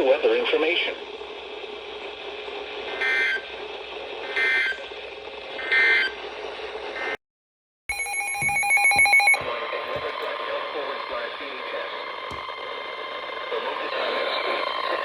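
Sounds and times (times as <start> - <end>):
radio hiss: 13.0 - 15.0.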